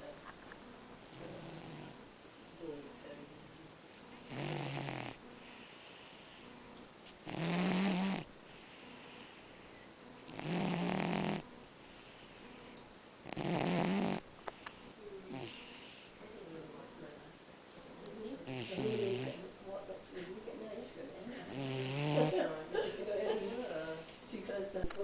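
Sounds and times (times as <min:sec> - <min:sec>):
cat snoring loudly: 0:01.1 - 0:02.0, 0:04.2 - 0:14.7, 0:15.3 - 0:16.2, 0:18.4 - 0:19.4, 0:21.5 - 0:22.4.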